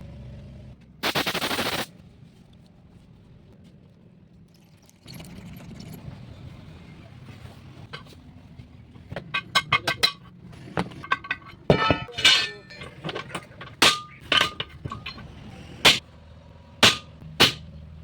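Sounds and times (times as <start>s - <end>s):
metal tools hammering metal: 9.2s - 16.0s, 16.8s - 17.7s.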